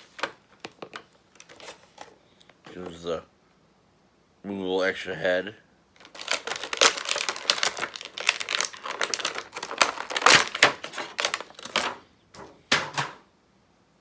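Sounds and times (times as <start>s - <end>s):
plastic packaging crinkling: 0.0s - 2.1s, 6.0s - 13.2s.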